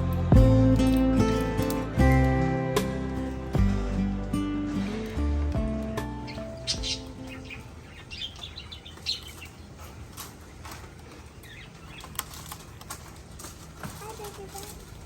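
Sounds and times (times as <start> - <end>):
music: 0.0 - 8.1
parrot chirps and squeaks: 6.3 - 9.6.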